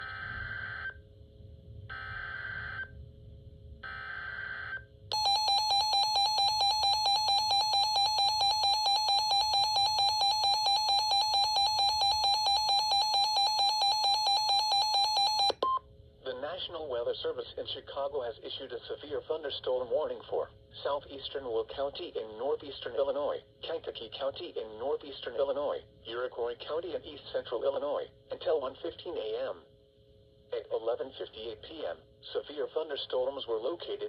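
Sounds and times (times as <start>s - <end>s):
buzzing pulsing alarm tone: 3.9s - 15.6s.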